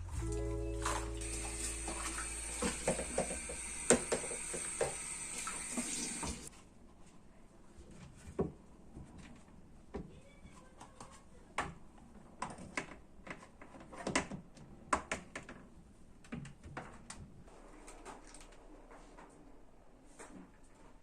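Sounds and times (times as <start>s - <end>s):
objects knocking and clicking: 2.6s - 5.0s.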